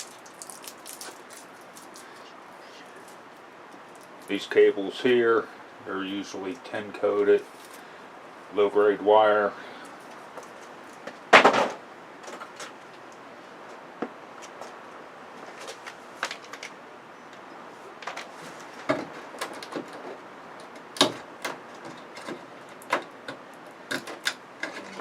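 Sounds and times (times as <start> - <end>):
cables and connectors clicking: 18.9 - 25.0.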